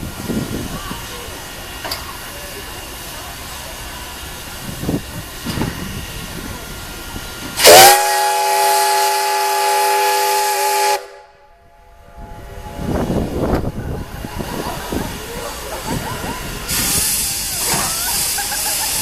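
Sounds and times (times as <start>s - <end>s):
steam hissing: 0.0s - 11.2s, 12.6s - 19.0s
steam locomotive whistle: 7.6s - 14.2s.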